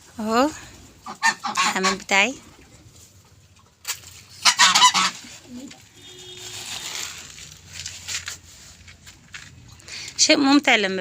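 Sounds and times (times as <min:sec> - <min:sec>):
geese honking: 0:01.0 - 0:02.2, 0:04.4 - 0:05.4.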